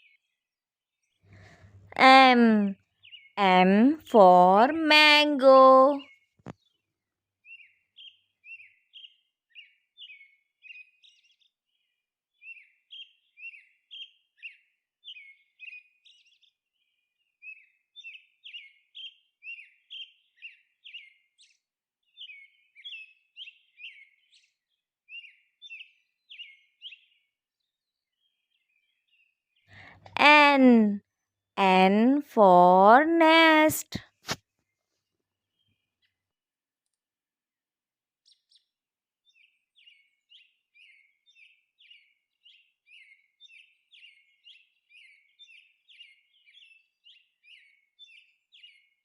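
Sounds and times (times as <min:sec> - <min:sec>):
small bird chirping: 0:25.2 - 0:30.2.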